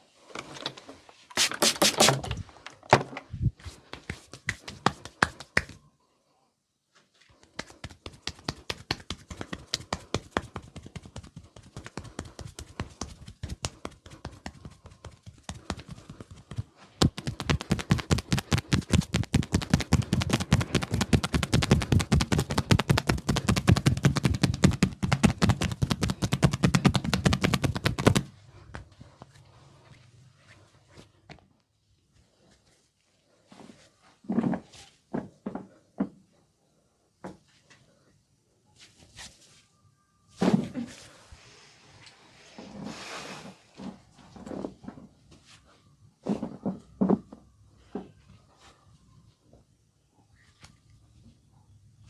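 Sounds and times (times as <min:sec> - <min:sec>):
hand slaps on body: 0:01.4 - 0:02.2, 0:03.9 - 0:05.8, 0:07.5 - 0:15.9, 0:16.5 - 0:28.3.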